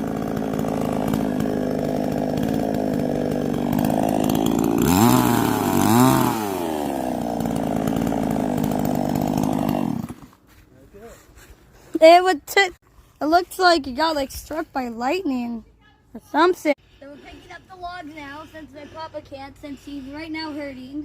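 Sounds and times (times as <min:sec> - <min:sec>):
chainsaw cutting wood: 0:00.0 - 0:10.6.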